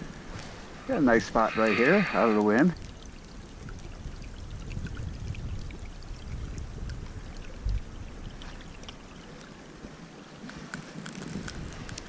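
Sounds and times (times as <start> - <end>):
wind gusts on microphone: 0.0 - 8.7, 9.8 - 12.0
faint ticks: 8.4 - 12.0.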